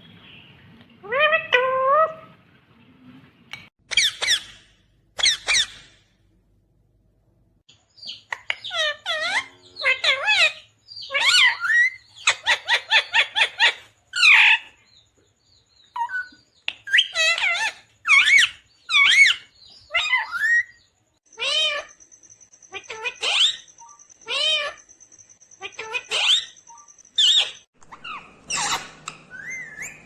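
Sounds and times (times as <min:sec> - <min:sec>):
parakeet warbling calls: 0:03.9 - 0:04.6, 0:05.2 - 0:05.9, 0:08.1 - 0:14.6, 0:16.9 - 0:22.0, 0:22.7 - 0:24.8, 0:25.6 - 0:30.0.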